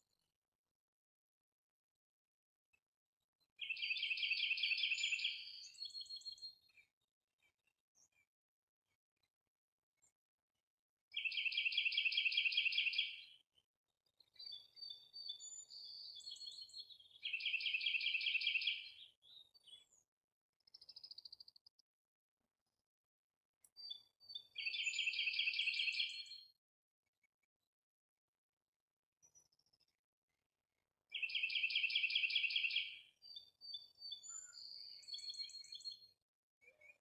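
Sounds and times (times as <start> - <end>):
bird chirps: 3.6 - 6.9, 14.1 - 20.0, 23.8 - 26.6, 31.1 - 37.0.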